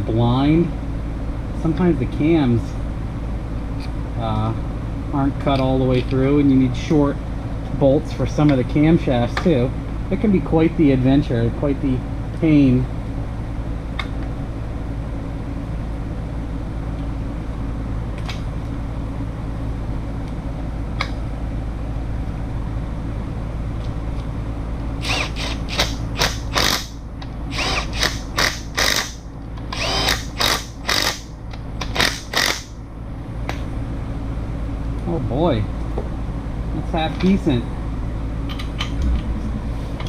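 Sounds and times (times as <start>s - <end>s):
power drill driving bolts: 25.0s - 26.9s, 27.5s - 31.2s, 31.8s - 32.7s.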